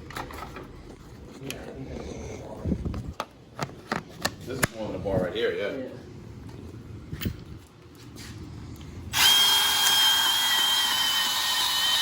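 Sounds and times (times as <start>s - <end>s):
power tool high whine: 9.1s - 12.0s.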